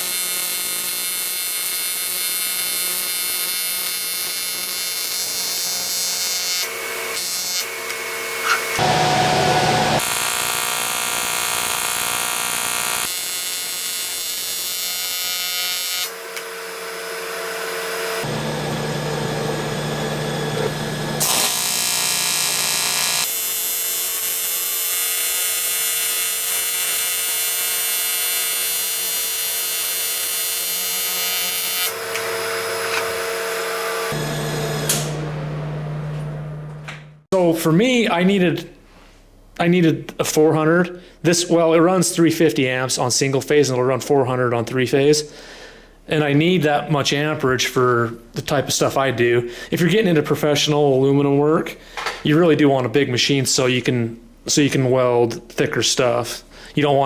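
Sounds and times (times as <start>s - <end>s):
welding arc buzzing: 0.0s - 37.3s.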